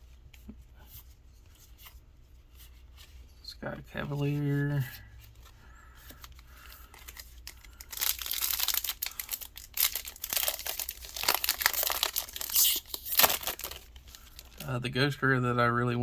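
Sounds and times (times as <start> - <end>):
foil wrapper crinkling: 6.1 - 14.8.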